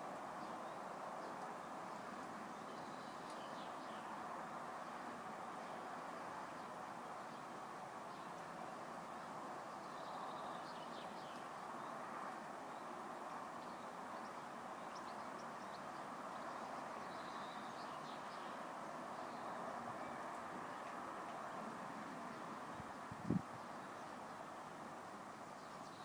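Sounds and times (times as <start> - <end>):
small birds chirping: 0.4 - 26.0.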